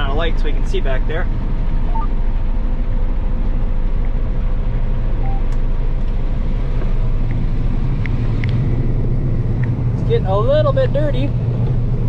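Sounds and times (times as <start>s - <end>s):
combine harvester engine rumble: 0.0s - 12.0s.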